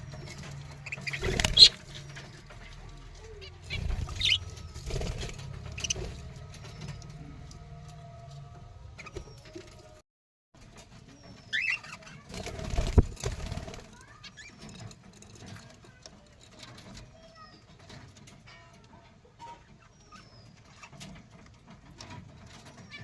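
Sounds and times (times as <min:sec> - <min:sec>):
budgerigars chirping: 0:00.0 - 0:07.2.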